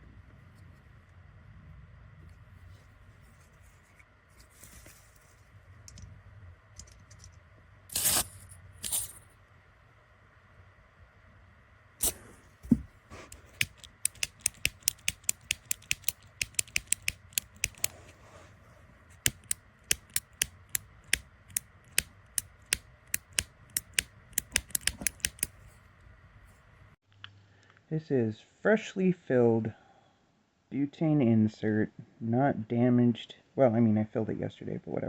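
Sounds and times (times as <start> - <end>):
lighter igniter clicking: 13.6 - 17.9, 19.2 - 25.5.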